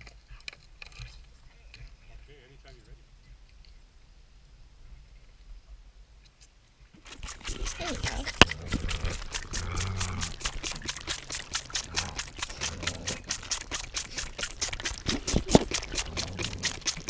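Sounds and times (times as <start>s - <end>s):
goat kid sucking and gulping: 7.0s - 17.0s.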